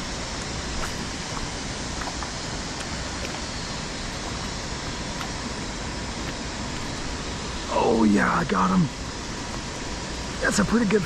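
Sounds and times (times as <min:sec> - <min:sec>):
river water rushing: 0:00.0 - 0:08.2
faint small ticks: 0:04.1 - 0:05.6.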